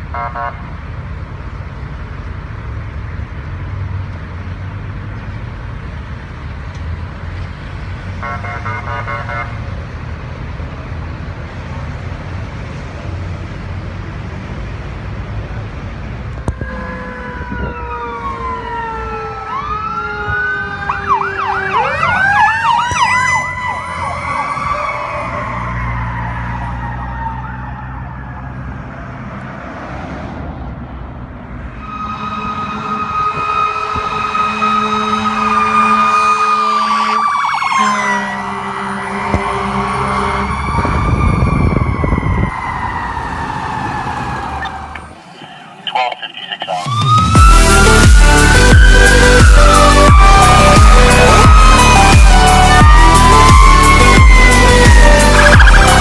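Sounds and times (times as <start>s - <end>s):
engine and road rumble: 0.0s - 56.0s
electronic siren yelp: 16.6s - 28.4s, 31.8s - 45.1s, 45.8s - 56.0s
horn blast: 31.8s - 40.9s, 47.2s - 56.0s.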